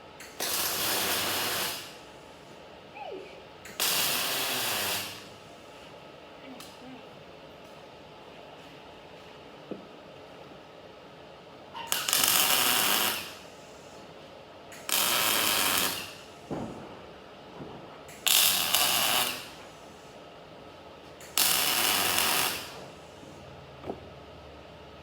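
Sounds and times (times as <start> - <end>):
crackling welding arc: 0.2 - 2.2, 3.6 - 5.4, 11.8 - 14.0, 14.7 - 17.1, 17.9 - 20.2, 21.2 - 23.2.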